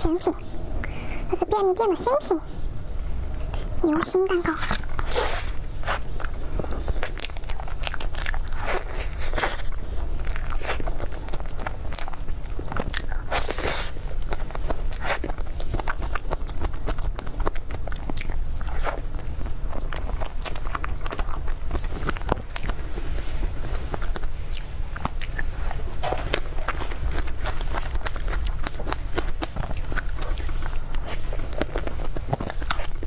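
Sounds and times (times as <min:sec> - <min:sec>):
steady low hum: 0:00.0 - 0:33.0
wet bites and chewing: 0:04.4 - 0:22.8, 0:23.9 - 0:33.0.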